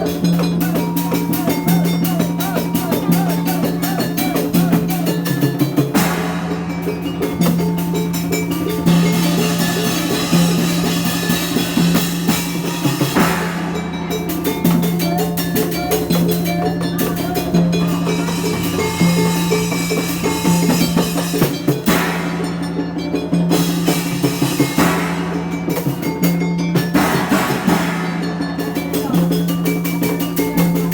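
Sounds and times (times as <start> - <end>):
fast drum rhythm: 0.0 - 30.9
low sustained tone: 13.8 - 23.5.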